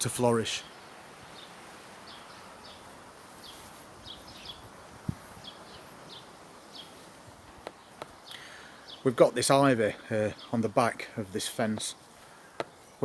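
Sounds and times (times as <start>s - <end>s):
faint background noise: 0.0s - 13.0s
small bird chirping: 0.6s - 9.1s.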